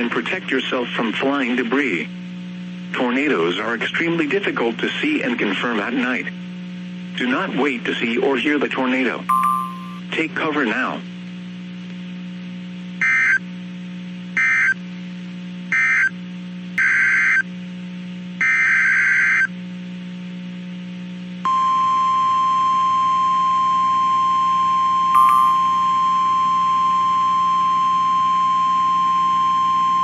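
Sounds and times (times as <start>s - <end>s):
low electrical hum: 0.0s - 30.0s
steady high alert tone: 9.3s - 10.0s, 25.1s - 27.8s.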